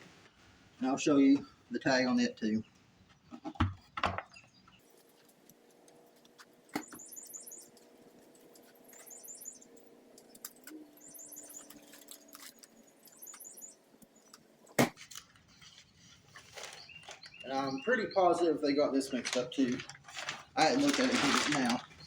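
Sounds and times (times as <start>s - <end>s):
high-pitched chirp trills: 6.7s - 7.9s, 8.6s - 14.6s.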